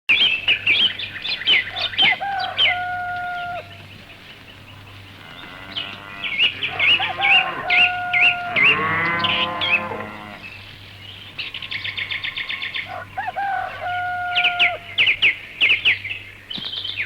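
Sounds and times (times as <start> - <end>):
small birds chirping: 0.1 - 17.0
rooster crowing: 1.8 - 3.7, 6.6 - 10.1, 12.8 - 14.9.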